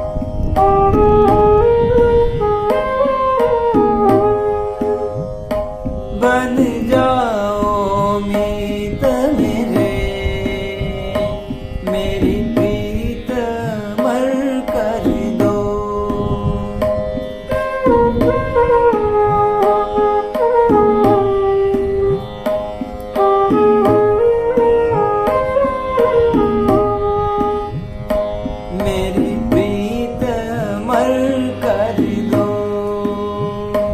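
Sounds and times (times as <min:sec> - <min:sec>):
flute melody: 0:00.0 - 0:06.4, 0:17.2 - 0:28.1
hand drum beats: 0:00.0 - 0:33.9
steady accompanying tones: 0:00.0 - 0:33.9.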